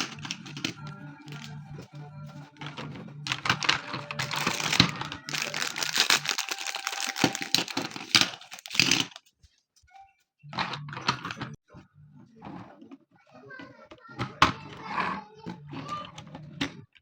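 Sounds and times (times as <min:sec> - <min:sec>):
packaging crinkling and tearing: 0:03.6 - 0:09.2.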